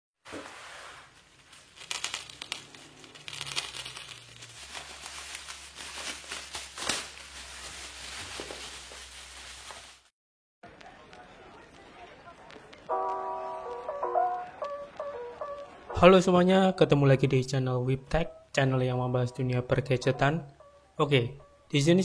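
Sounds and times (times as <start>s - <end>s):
packaging crinkling and rustling: 0.3s - 10.1s.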